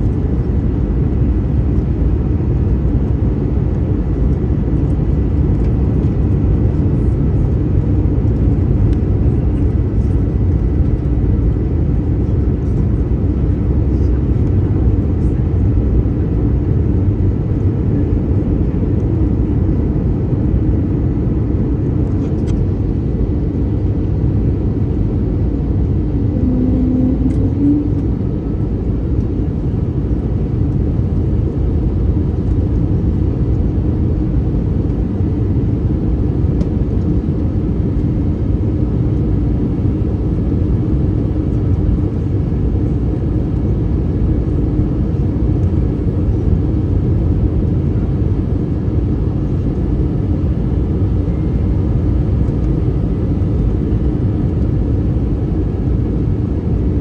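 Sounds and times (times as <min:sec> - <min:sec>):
airplane cabin engine roar: 0:00.0 - 0:57.0.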